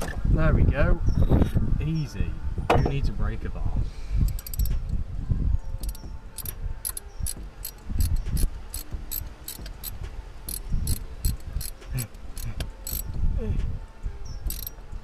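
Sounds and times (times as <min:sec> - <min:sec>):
socket wrench ratcheting: 0:04.3 - 0:04.7, 0:05.8 - 0:13.1, 0:14.5 - 0:14.8.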